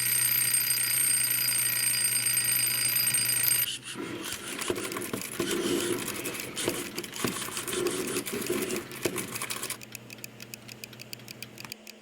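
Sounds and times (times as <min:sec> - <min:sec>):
alarm clock bell rattling: 0:00.0 - 0:03.7
clock ticking: 0:04.6 - 0:12.0.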